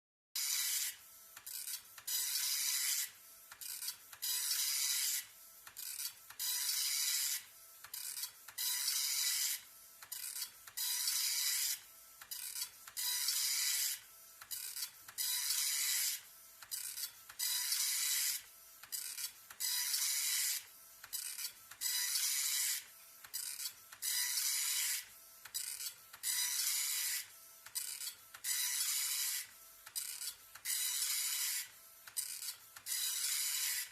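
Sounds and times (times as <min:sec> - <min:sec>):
dot-matrix printer printing: 0:00.4 - 0:33.9.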